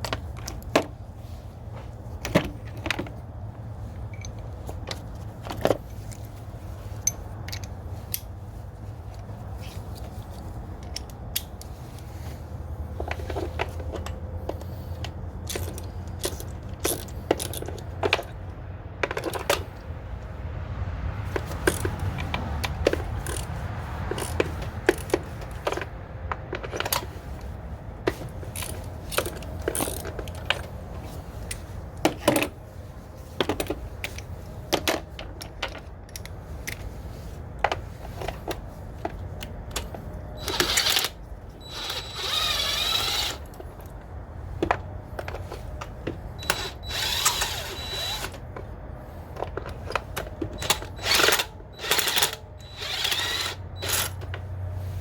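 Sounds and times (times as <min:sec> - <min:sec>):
metallic clicks of hand tools: 0:49.4 - 0:54.5.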